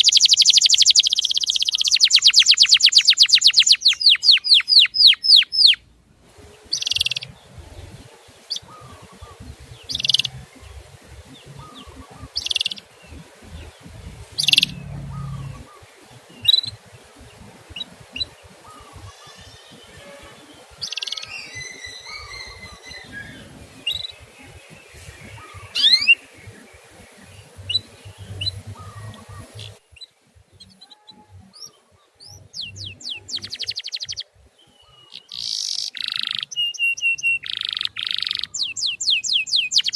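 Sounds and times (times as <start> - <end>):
canary twittering: 0.0 - 5.8, 6.7 - 7.4, 8.5 - 10.8, 11.4 - 13.7, 14.3 - 15.8, 20.8 - 24.3, 35.0 - 39.9
canary chirping: 0.0 - 39.9.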